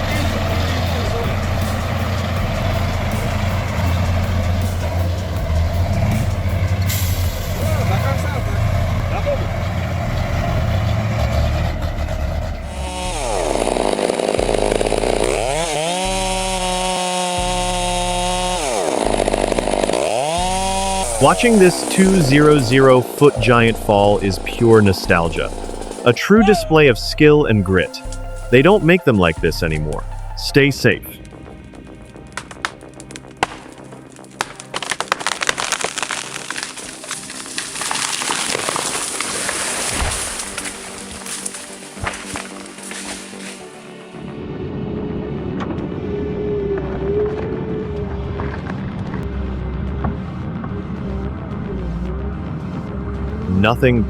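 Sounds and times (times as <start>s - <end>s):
chainsaw revving and idling: 0.0s - 44.0s
background music: 0.0s - 54.0s
tree cracking and crashing down: 12.8s - 21.3s, 31.3s - 44.0s
branches snapping and crackling: 31.2s - 44.0s.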